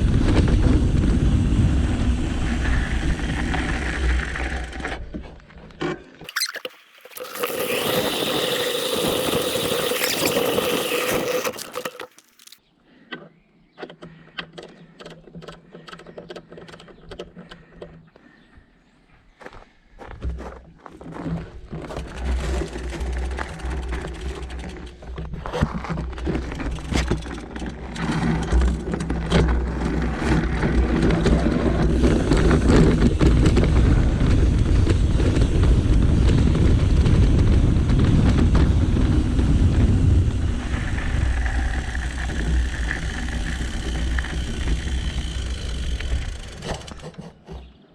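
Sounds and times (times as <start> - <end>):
bike rumbling over rough ground: 0.0 - 6.1, 21.0 - 47.9.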